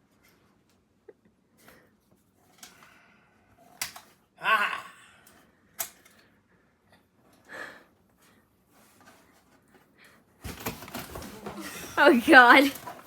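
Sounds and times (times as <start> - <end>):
faint breath: 6.1 - 8.5
rustling: 8.7 - 13.0.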